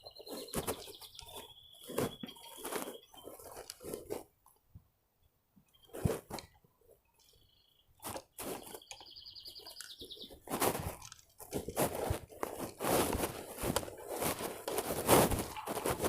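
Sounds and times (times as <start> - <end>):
crunching scuffs and knocks: 0.1 - 4.3, 8.0 - 9.0, 9.6 - 16.0.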